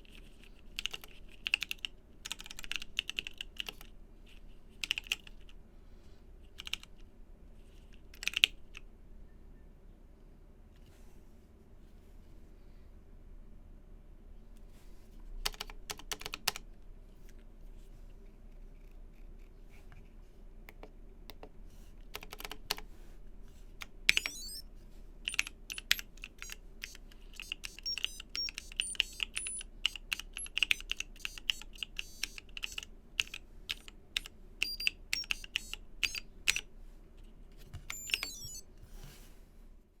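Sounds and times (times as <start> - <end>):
typing on mechanical keyboard: 0.0 - 3.9, 4.8 - 5.6, 6.6 - 7.0, 8.0 - 8.8, 15.4 - 16.6, 21.3 - 22.8, 23.8 - 24.6, 25.3 - 36.7, 37.8 - 38.6.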